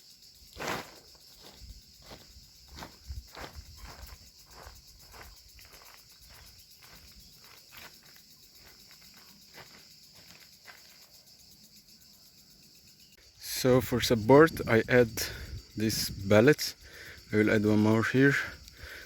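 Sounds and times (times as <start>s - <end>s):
crickets chirring: 0.0s - 19.0s
soft footsteps: 0.6s - 11.1s.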